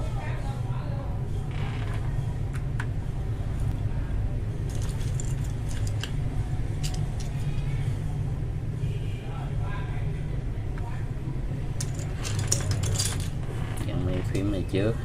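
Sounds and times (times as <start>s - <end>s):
keycaps clicking and clattering: 4.7s - 6.2s, 6.8s - 7.4s, 11.8s - 13.4s.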